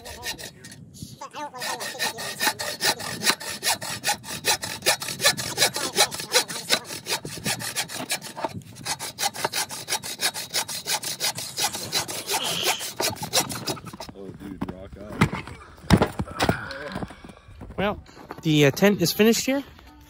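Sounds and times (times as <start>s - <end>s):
hand saw cutting wood: 0.0s - 0.8s, 1.4s - 14.2s.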